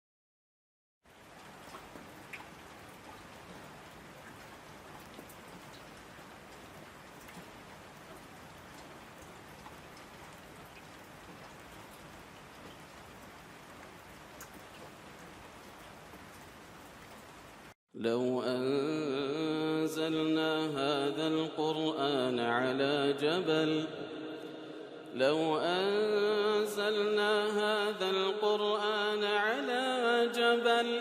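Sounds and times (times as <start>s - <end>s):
steady rain hiss: 1.1s - 17.8s.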